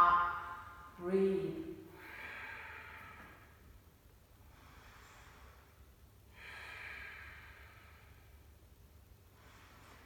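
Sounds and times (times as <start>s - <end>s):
person breathing: 1.9s - 3.8s, 4.4s - 10.0s.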